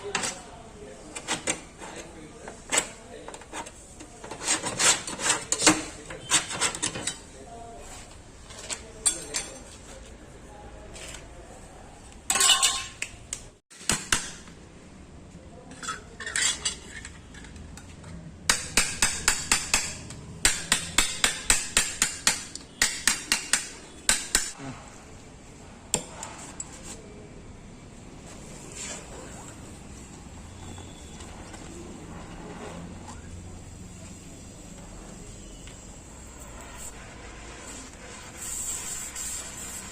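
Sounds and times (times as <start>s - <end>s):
hammer striking sheet metal: 18.5s - 24.6s.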